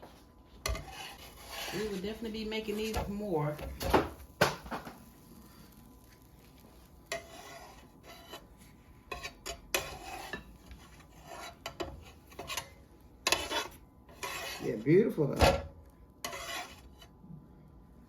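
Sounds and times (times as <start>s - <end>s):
utensils scraping and clinking dishes: 0.6s - 4.0s, 7.1s - 8.5s, 9.1s - 15.6s, 16.2s - 17.1s.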